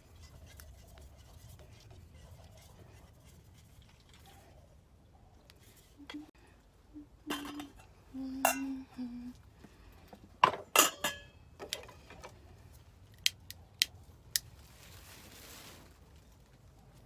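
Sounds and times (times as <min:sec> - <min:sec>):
metal utensils and dishes clinking: 0:10.7 - 0:12.0.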